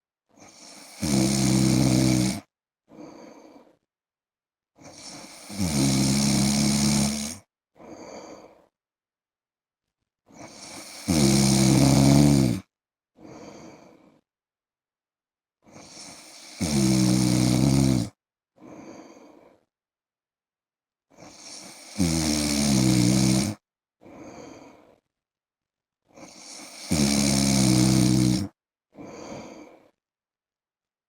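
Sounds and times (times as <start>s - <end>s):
man snoring: 0.4s - 3.5s, 4.8s - 7.5s, 10.4s - 14.0s, 15.7s - 18.2s, 21.2s - 23.6s, 26.2s - 29.8s
soft breath: 2.9s - 3.9s, 7.8s - 8.8s, 13.2s - 14.3s, 18.6s - 19.8s, 24.0s - 25.1s, 29.0s - 30.0s.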